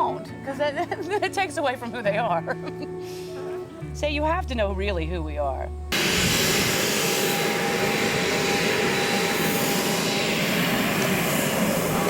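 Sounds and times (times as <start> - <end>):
jet engines rushing: 5.9 - 12.0
thin steady whine: 5.9 - 12.0.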